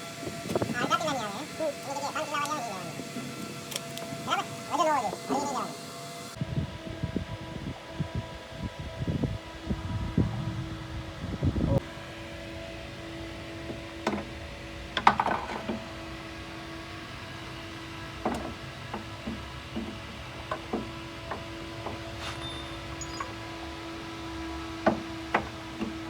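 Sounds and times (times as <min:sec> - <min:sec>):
steady hum: 0:00.0 - 0:26.0
loud clattering scrape: 0:22.2 - 0:23.4
metal tools clinking: 0:22.2 - 0:23.6.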